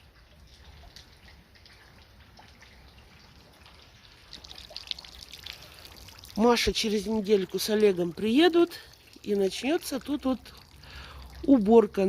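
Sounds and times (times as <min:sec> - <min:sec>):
meltwater dripping: 0:00.0 - 0:12.0.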